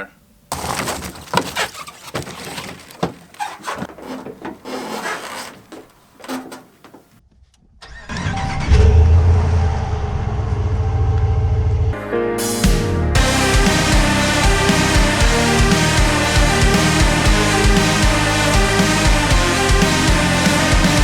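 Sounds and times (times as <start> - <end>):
knocks and clunks: 0.5 - 7.2
engine starting and running: 7.8 - 11.9, 13.2 - 21.0.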